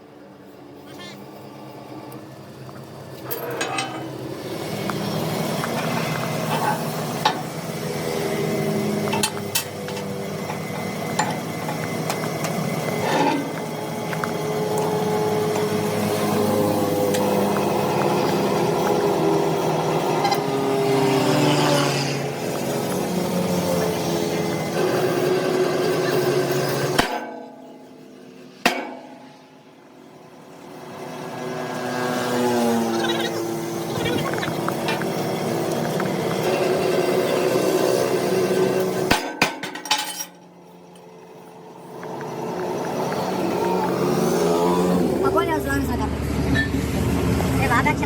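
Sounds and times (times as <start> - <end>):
mechanical hum: 0.0 - 48.0.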